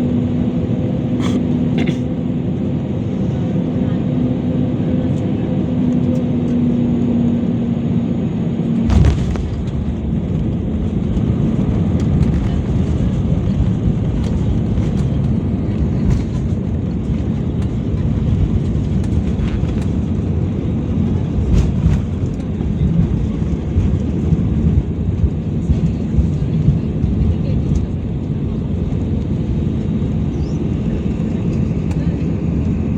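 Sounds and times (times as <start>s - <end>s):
loud low engine rumble: 0.0s - 32.9s
steady cabin hum: 8.6s - 32.9s
thump: 8.9s - 9.9s.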